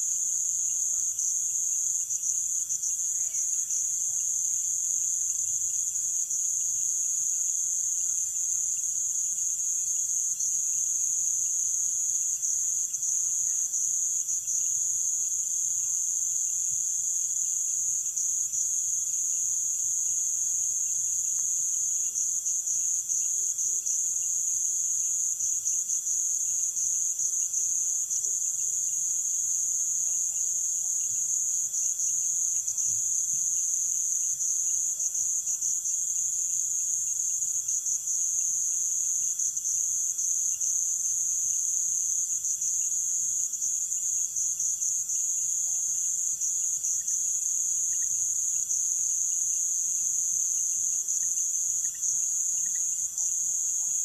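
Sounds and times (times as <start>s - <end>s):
high-pitched insect trill: 0.0s - 54.0s
fainter insect calls: 19.0s - 54.0s.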